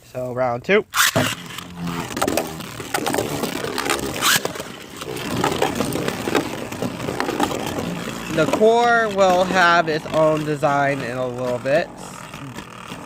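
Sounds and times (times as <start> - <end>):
spinning tops whirring and scraping: 0.9 - 13.0.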